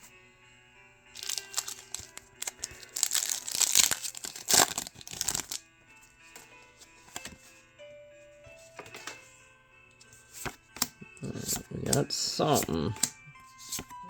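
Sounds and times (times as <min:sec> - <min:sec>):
foil wrapper tearing and crinkling: 0:01.2 - 0:05.6.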